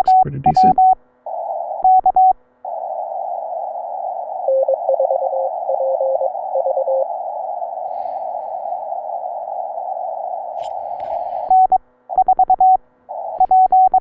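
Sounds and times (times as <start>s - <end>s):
radio band hiss: 0.0s - 0.8s, 7.8s - 9.5s, 10.5s - 11.6s
morse code signal: 0.0s - 1.0s, 1.8s - 2.4s, 4.4s - 7.1s, 11.5s - 12.8s, 13.4s - 14.0s.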